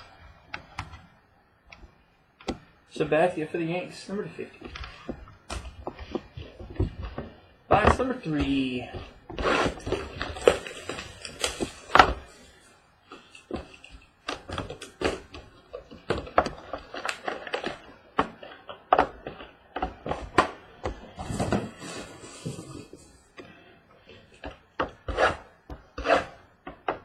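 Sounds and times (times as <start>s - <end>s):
packaging rustling and tearing: 8.4s - 18.8s.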